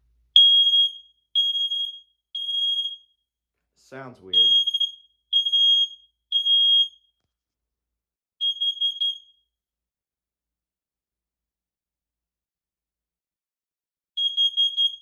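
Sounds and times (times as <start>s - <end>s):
smoke alarm beeping: 0.4s - 3.1s, 4.3s - 7.1s, 8.4s - 9.4s, 14.2s - 15.0s
person talking: 3.8s - 4.6s.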